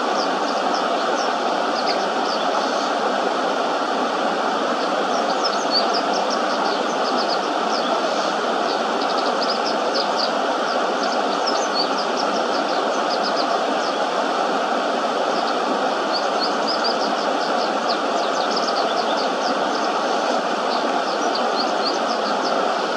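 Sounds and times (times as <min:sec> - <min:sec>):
flowing shallow river water: 0:00.0 - 0:22.9
bird twittering song: 0:04.9 - 0:14.0, 0:15.4 - 0:20.0, 0:20.7 - 0:22.7.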